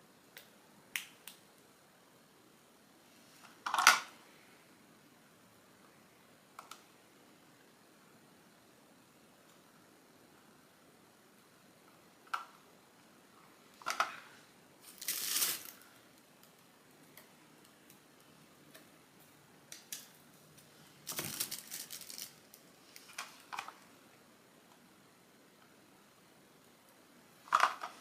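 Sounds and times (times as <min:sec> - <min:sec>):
small parts clicking and knocking: 0:27.5 - 0:28.0.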